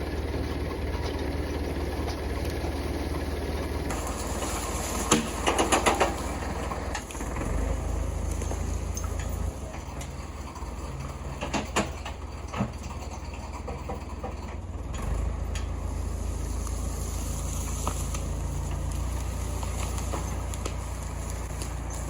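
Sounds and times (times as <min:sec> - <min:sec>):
engine running at low pitch: 0:00.0 - 0:22.0
sharp knocks and clatters: 0:03.9 - 0:07.1, 0:08.3 - 0:14.7.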